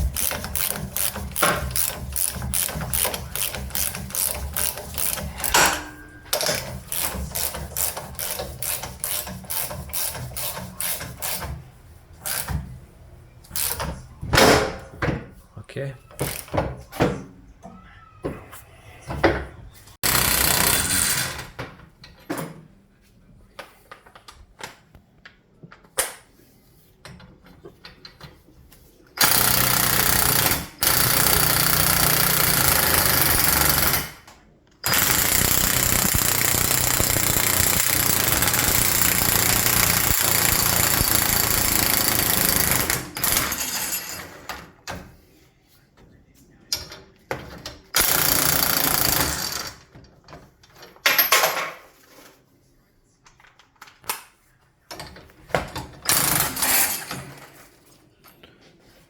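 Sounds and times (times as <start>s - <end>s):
impact wrench hammering: 0.0s - 11.6s, 20.0s - 21.5s, 29.2s - 34.2s, 34.8s - 44.1s, 48.0s - 49.8s
tool clicks and knocks: 0.0s - 11.6s.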